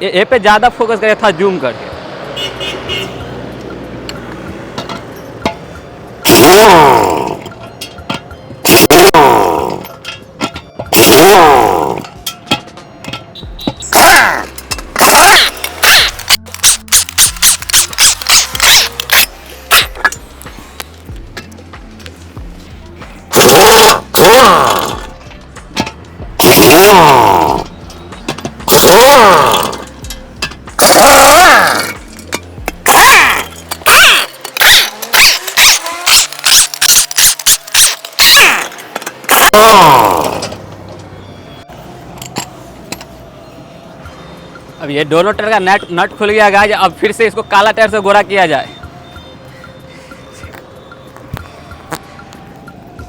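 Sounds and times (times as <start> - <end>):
pneumatic impact wrench bursts: 6.2 - 7.5, 8.7 - 9.9, 10.9 - 12.1, 13.9 - 20.8, 23.3 - 25.1, 26.4 - 27.7, 28.7 - 30.0, 30.8 - 32.0, 32.8 - 40.6.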